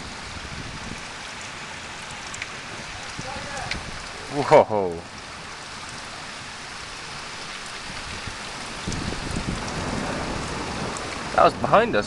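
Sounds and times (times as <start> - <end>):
heavy rain: 0.0 - 12.0
low rumble of thunder: 7.8 - 12.0.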